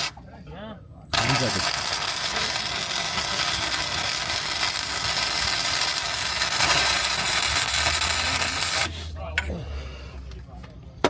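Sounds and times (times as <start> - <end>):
welding arc crackling hiss: 1.2 - 8.9.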